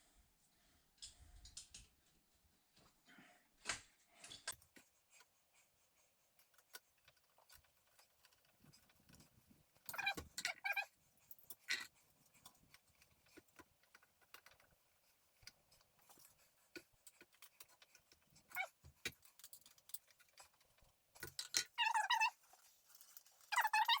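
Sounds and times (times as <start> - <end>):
light clicks of small parts: 1.0 - 2.0, 11.3 - 21.8.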